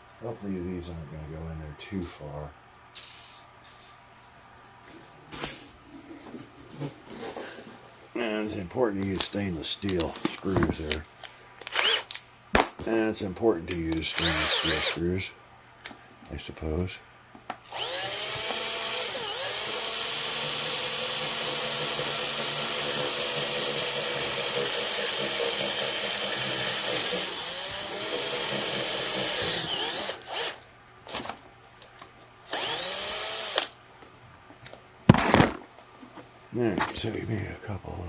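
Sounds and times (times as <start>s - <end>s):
power drill running: 11.7s - 12.1s, 14.1s - 15.0s, 17.7s - 30.6s, 32.5s - 33.8s.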